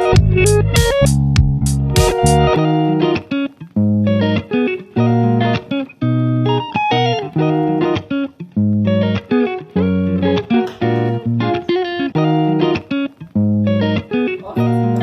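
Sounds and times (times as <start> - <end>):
bass notes: 0.0 - 2.6
plucked guitar: 0.0 - 15.0.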